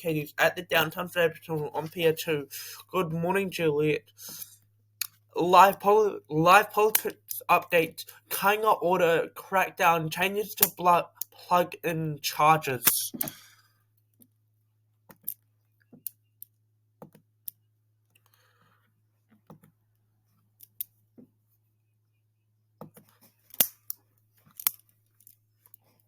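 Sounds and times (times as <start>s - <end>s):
small clicks and taps: 15.0s - 18.4s.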